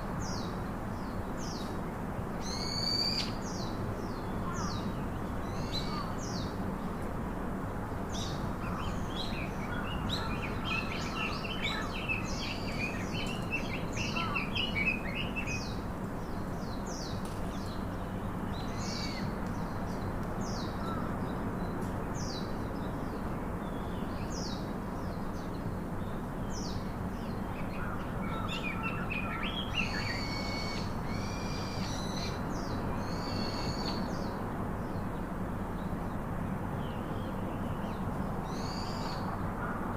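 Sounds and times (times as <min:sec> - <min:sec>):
small birds chirping: 0:08.1 - 0:35.9.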